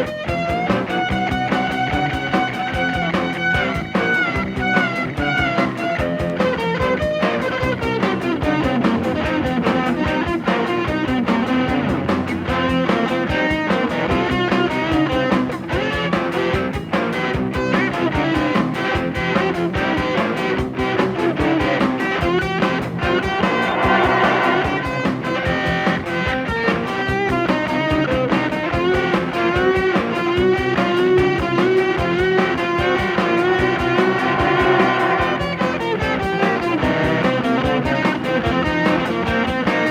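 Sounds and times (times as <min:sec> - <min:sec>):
instrumental rock with guitar: 0:00.0 - 0:39.9.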